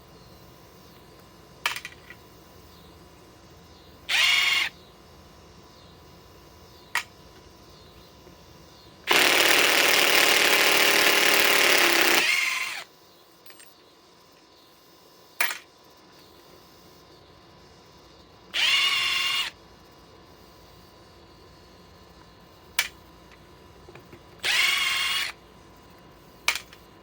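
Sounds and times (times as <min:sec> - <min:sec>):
impact driver hammering: 0:09.1 - 0:12.3.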